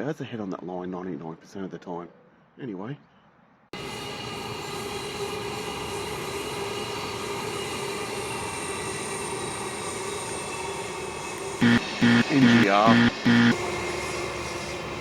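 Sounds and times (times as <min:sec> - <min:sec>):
electric train rumbling past: 0:03.8 - 0:15.0.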